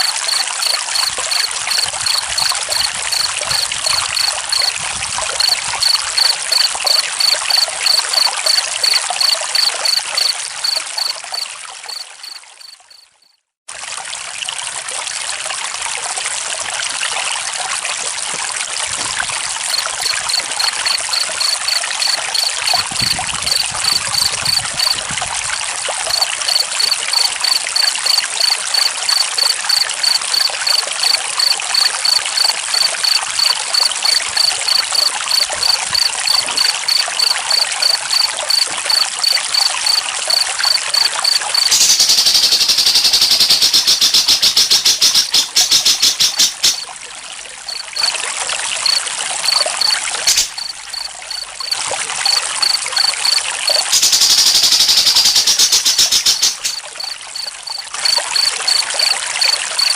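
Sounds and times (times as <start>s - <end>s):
stream water flowing: 0.0s - 13.0s, 13.7s - 59.9s
crickets chirping: 0.0s - 13.3s, 19.6s - 25.1s, 26.0s - 46.9s, 47.7s - 59.9s.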